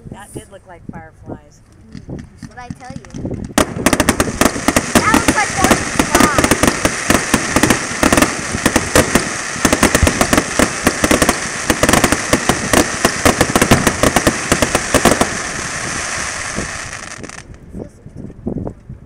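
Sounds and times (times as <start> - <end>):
fireworks crackling pops: 1.7 - 17.6
fireworks hiss: 2.9 - 17.5.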